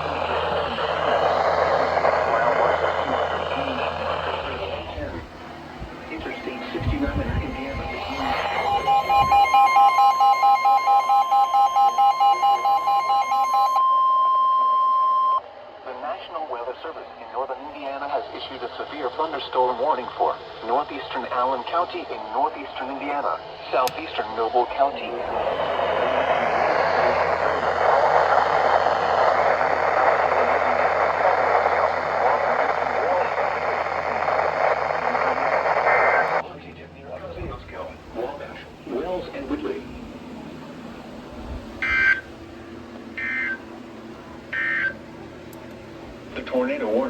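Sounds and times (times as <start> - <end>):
radio static hiss: 0.0 - 13.3, 15.7 - 47.0
steady alarm tone: 0.0 - 15.8, 18.3 - 35.1, 40.8 - 45.2
low hum: 0.0 - 47.0
pulsing beeps: 6.0 - 15.4, 41.8 - 42.4, 43.2 - 43.6, 44.5 - 45.0.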